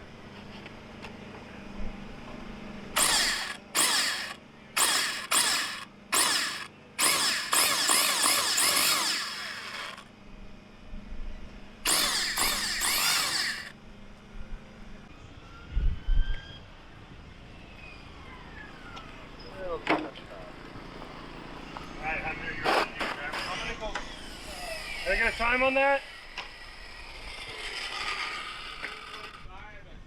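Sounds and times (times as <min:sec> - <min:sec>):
electric motor high-pitched whine: 0:03.0 - 0:10.1, 0:11.8 - 0:13.8, 0:23.4 - 0:29.5.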